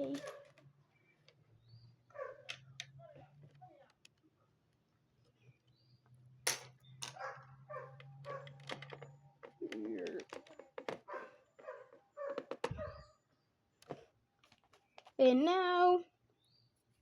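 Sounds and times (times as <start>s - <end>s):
plastic bricks clicking: 0.0s - 0.7s, 8.0s - 11.0s.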